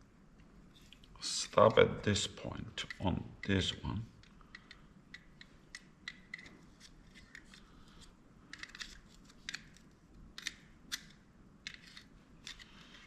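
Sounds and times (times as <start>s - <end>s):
camera parts clicking: 8.5s - 13.0s.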